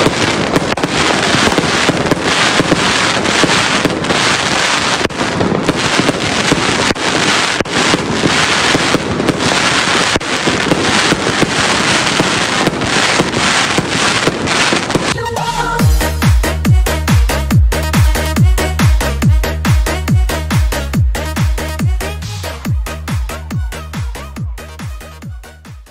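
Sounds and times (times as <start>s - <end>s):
fireworks crackling and banging: 0.0s - 25.9s
music with a steady beat: 15.6s - 25.9s.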